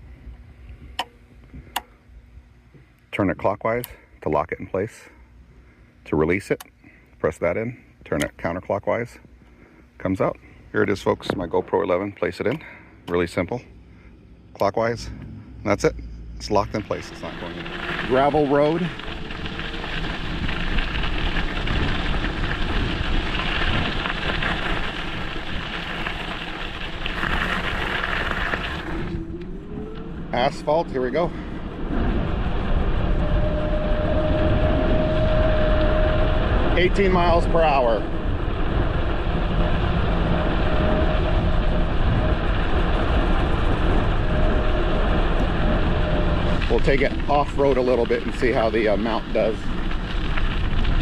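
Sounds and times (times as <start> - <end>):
tyres rolling over gravel: 16.4 - 51.0
wind rush: 16.6 - 51.0.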